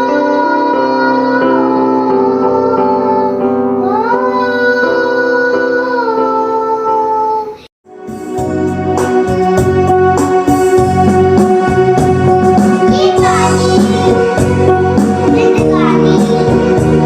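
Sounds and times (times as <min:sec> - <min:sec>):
music with a beat: 0:07.9 - 0:17.0
children singing: 0:12.8 - 0:14.3.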